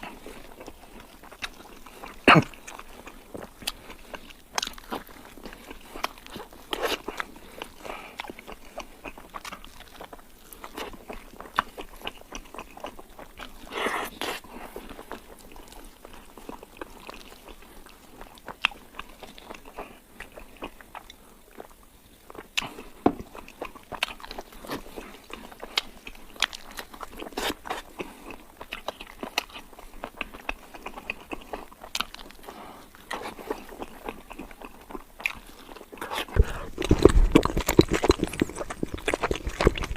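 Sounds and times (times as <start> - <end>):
person chewing wetly: 0.0 - 39.9
mouth clicks: 36.0 - 39.9.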